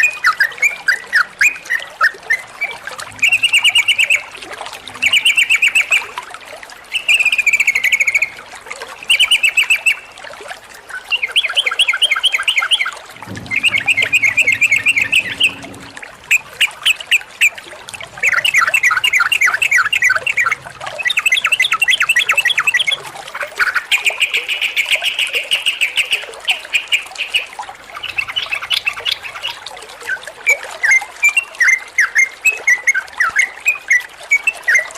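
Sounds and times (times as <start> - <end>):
bird whistled notes: 0.0 - 4.3, 9.1 - 10.2, 11.1 - 17.5, 18.2 - 23.0
bulbul chattering song: 2.6 - 4.3, 9.1 - 10.2, 11.0 - 17.6, 18.2 - 29.6.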